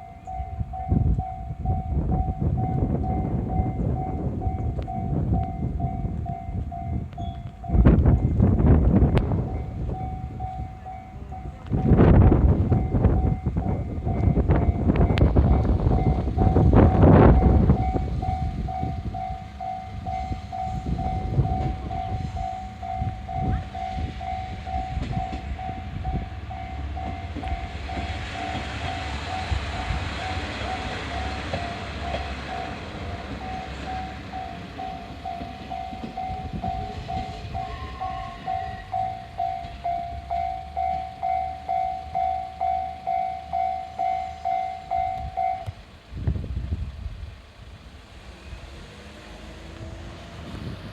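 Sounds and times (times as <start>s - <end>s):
level-crossing alarm ringing: 0.0s - 8.4s, 9.4s - 45.8s
diesel engine rumble: 0.0s - 50.9s
train wheel knocks: 24.7s - 25.8s, 27.0s - 37.7s.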